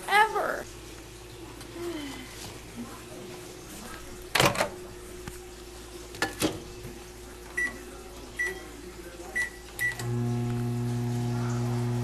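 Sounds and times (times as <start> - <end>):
microwave humming: 4.1 - 12.0.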